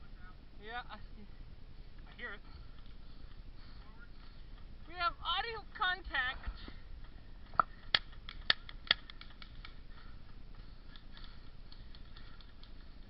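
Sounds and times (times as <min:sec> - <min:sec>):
faint scattered ticking: 0:07.0 - 0:13.0.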